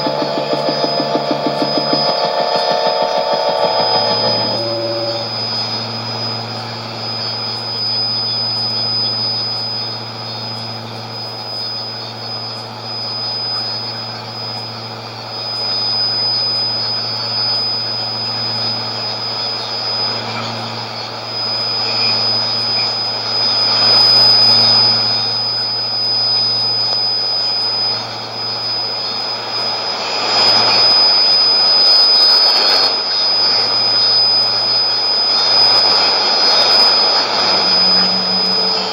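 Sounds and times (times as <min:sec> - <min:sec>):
low hum: 0:00.0 - 0:14.3, 0:29.0 - 0:38.9
shortwave radio droning noise: 0:00.0 - 0:38.9
thin high whistle: 0:00.0 - 0:38.9.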